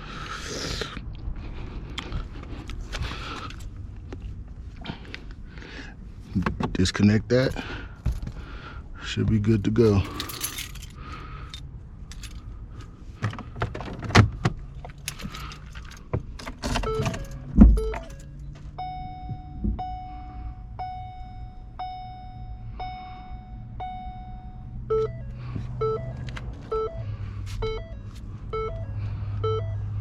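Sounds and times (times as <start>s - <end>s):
keys jangling: 9.8s - 12.5s, 14.9s - 18.4s
car warning chime: 16.7s - 30.0s
two-note beep: 18.8s - 27.0s.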